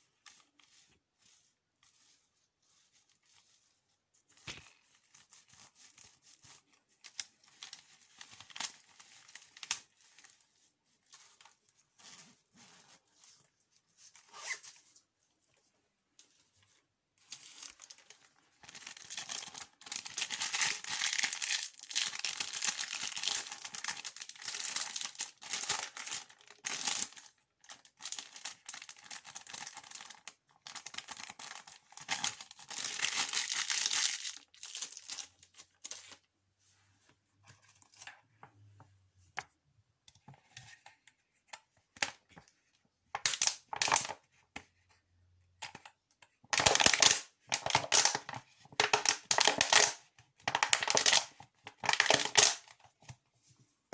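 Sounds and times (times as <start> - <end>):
crinkling and tearing: 17.2 - 36.3.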